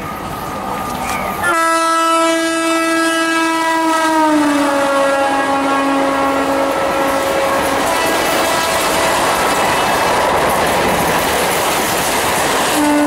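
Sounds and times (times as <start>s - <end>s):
train coaches rumbling and clattering: 0.0s - 13.0s
train horn blast: 1.4s - 9.4s, 12.7s - 13.0s.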